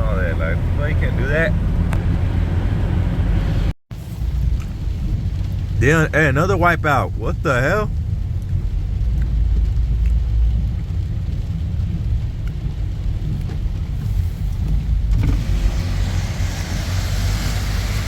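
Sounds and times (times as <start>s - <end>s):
car road and engine rumble: 0.0s - 18.0s
tyre hiss on wet road: 13.9s - 14.7s, 15.3s - 18.0s.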